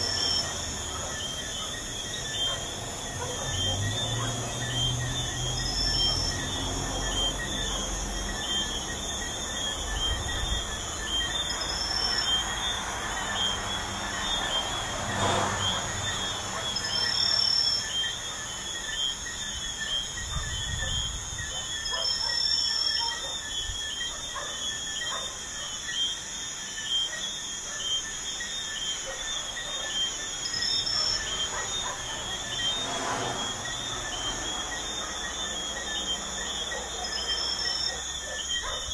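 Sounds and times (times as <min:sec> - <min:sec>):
highway traffic rumble: 0:00.0 - 0:22.4, 0:28.9 - 0:38.9
crickets and insects chirping: 0:00.0 - 0:38.9
higher insect trill: 0:00.0 - 0:38.9
vehicle passing: 0:02.5 - 0:18.6, 0:30.9 - 0:37.7.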